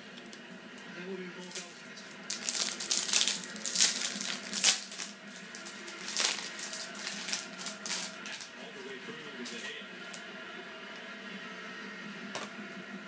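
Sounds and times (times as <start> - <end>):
foil wrapper tearing and crinkling: 1.5 - 8.5.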